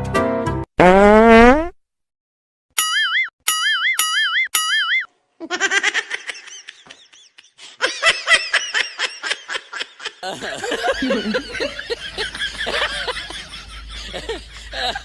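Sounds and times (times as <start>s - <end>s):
warbling comic boing: 2.8s - 5.1s
rapid ha-ha laughter: 5.4s - 15.0s.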